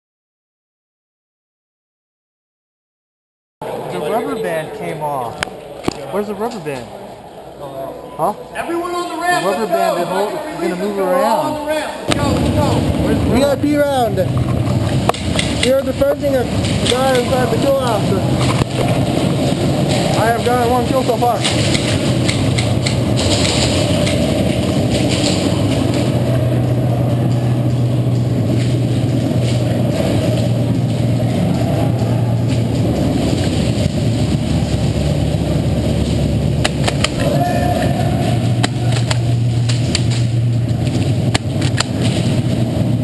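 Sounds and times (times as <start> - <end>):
low mechanical hum: 11.6 - 43.0.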